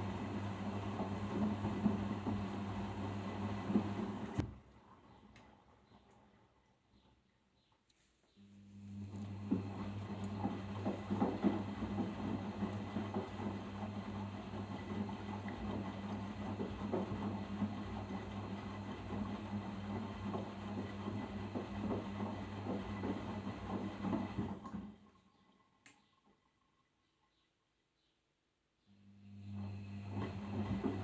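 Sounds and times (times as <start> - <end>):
washing machine motor hum: 0.0 - 4.4, 8.6 - 25.1, 29.0 - 31.0.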